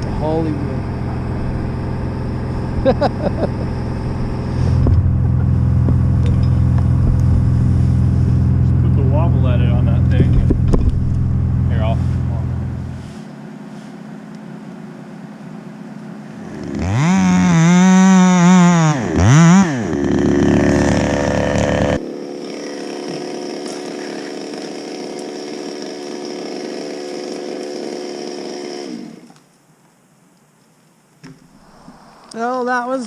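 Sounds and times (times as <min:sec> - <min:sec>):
two-stroke chainsaw idling and revving: 0:00.0 - 0:08.7, 0:16.3 - 0:29.3.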